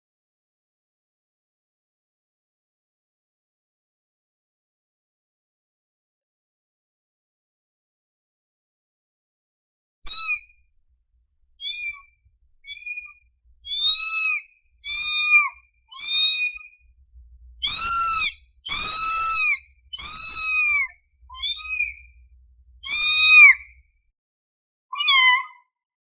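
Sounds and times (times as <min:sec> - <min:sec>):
kitten meowing: 0:10.1 - 0:10.4, 0:11.6 - 0:16.8, 0:17.6 - 0:22.1, 0:22.8 - 0:23.7, 0:24.9 - 0:25.6.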